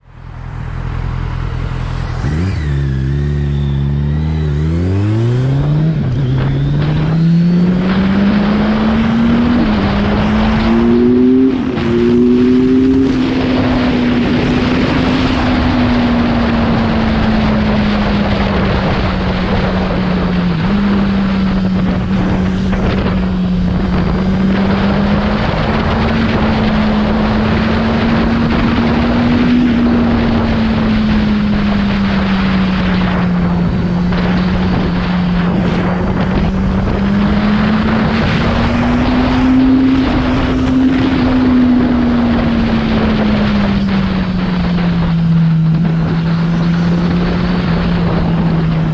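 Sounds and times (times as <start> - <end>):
motorcycle engine cruising: 0.0 - 48.9
wind rush on microphone: 0.0 - 48.9.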